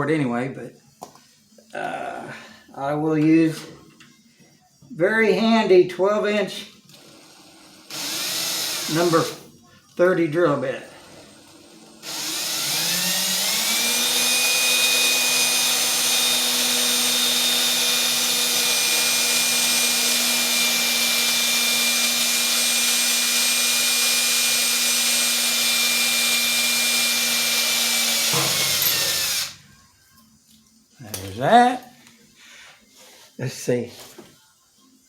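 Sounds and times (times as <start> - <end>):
power drill whining: 6.9 - 9.4, 10.9 - 29.6.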